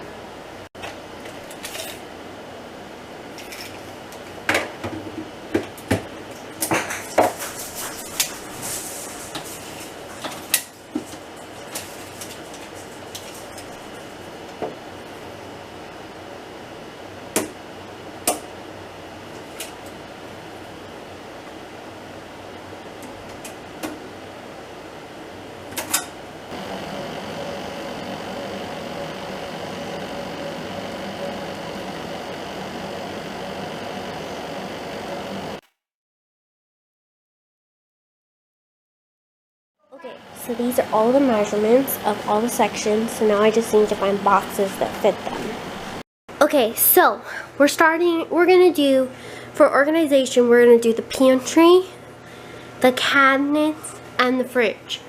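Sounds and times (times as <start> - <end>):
steady hum with faint whine: 0.0 - 35.6, 40.0 - 55.0.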